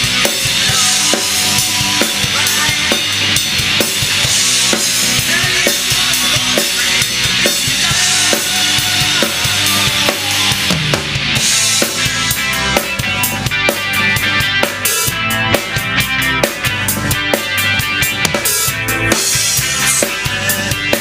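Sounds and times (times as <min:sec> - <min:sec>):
drum kit beat: 0:00.0 - 0:21.0
rock band playing: 0:00.0 - 0:21.0.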